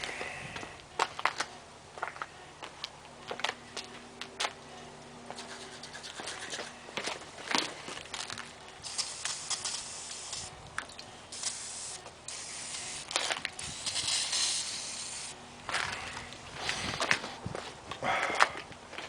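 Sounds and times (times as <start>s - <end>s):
aerosol can spraying: 8.8s - 10.5s, 11.3s - 15.4s.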